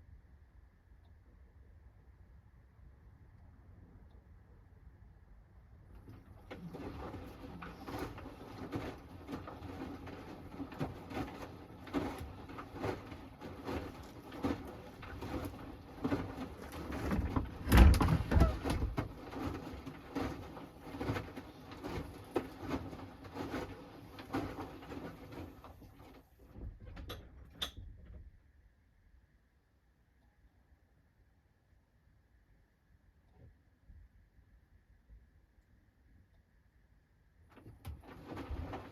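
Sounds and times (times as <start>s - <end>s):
water sloshing: 6.0s - 26.2s.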